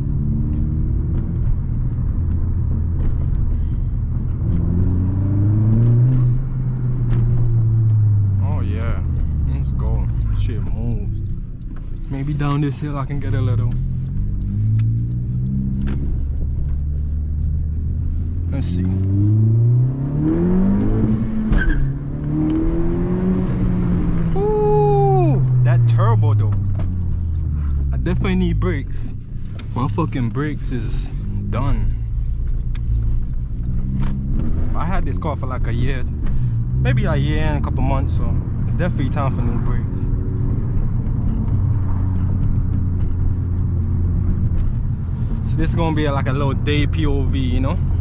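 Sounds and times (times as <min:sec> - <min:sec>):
car engine accelerating: 0:00.0 - 0:48.0.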